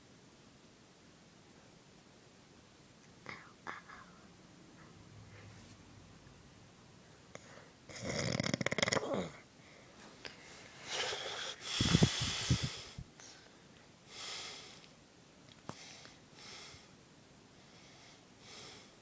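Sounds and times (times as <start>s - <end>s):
man snoring: 7.9s - 9.4s.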